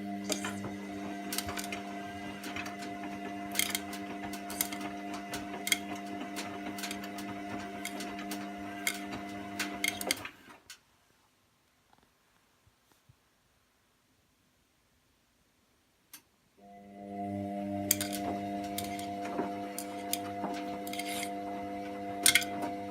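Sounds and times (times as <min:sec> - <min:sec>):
washing machine motor hum: 0:00.0 - 0:10.5, 0:16.6 - 0:22.9
washing machine clicking: 0:00.1 - 0:10.7, 0:17.8 - 0:22.9.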